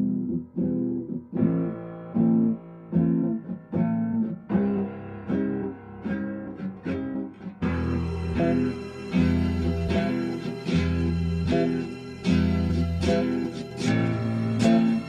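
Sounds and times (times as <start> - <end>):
bass and backing music: 0.0 - 15.0
plucked guitar chords: 0.0 - 15.0.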